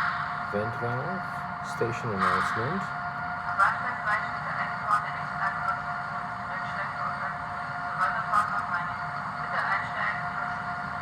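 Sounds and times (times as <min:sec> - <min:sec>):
recorded station announcement: 0:00.5 - 0:02.9, 0:08.0 - 0:10.2.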